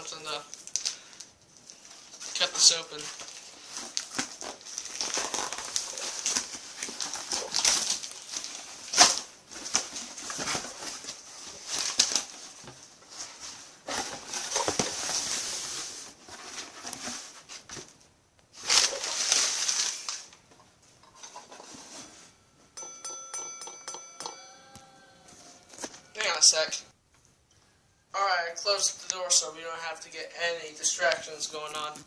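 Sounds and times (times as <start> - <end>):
package being torn open: 3.9 - 9.8
steady pitched tone: 22.3 - 26.6.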